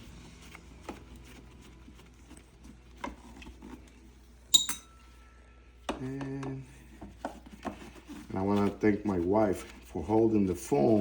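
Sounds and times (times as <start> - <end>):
sharp metallic clink: 4.5 - 5.0.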